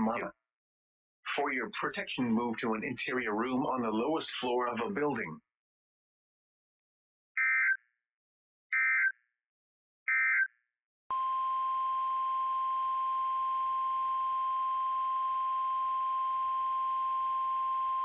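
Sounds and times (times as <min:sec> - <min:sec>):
steady warning alarm tone: 0:11.1 - 0:18.0.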